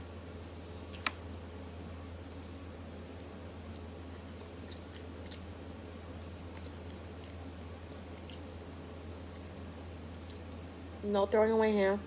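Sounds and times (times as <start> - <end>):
low electrical hum: 0.0 - 12.0
person chewing food: 0.4 - 10.5.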